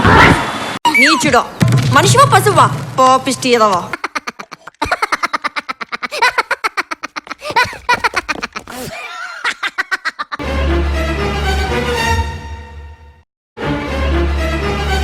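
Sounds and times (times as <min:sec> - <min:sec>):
person laughing hard: 0:03.9 - 0:10.4.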